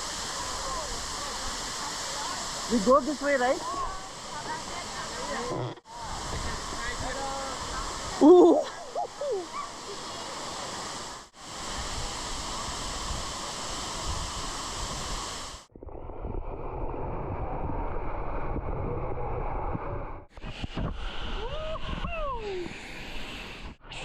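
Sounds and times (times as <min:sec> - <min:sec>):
waterfall rushing: 0:00.0 - 0:15.7.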